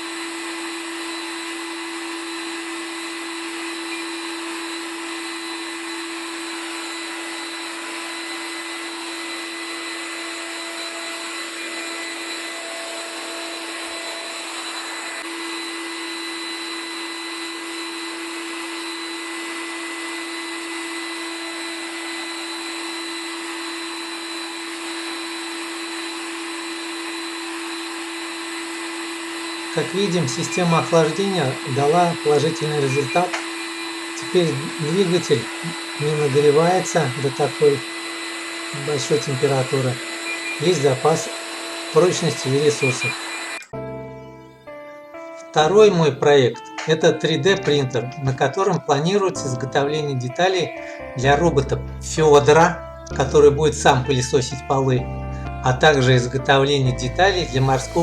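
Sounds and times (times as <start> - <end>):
vacuum turbines humming: 0.4 - 44.1, 44.7 - 58.0.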